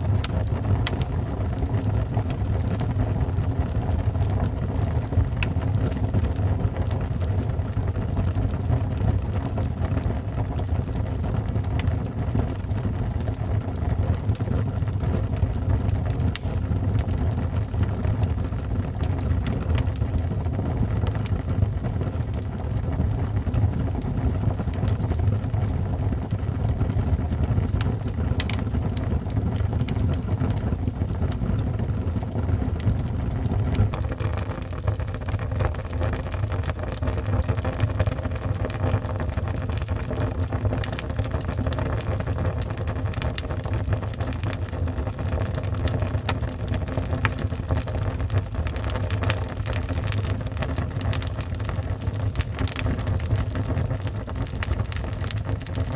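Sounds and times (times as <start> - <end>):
fire crackles and pops: 0.0 - 55.9
fire flames rumbling: 0.0 - 55.9.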